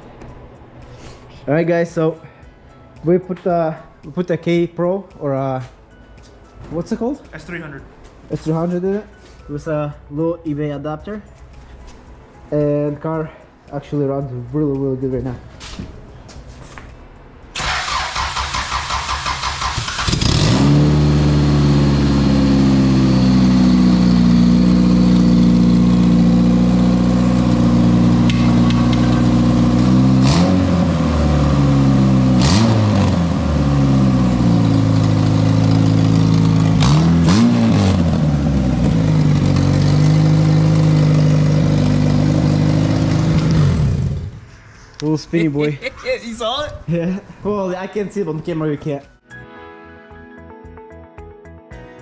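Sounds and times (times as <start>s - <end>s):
starter motor cranking engine: 17.6s - 20.8s
car engine idling: 21.0s - 32.4s, 33.2s - 44.5s.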